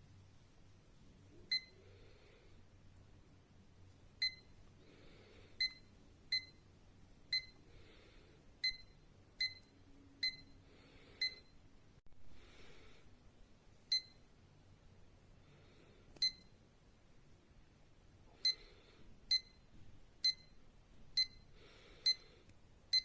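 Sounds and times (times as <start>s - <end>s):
alarm clock beeps: 5.6s - 6.6s, 7.3s - 7.6s, 8.6s - 10.6s, 11.2s - 11.5s, 21.2s - 21.4s.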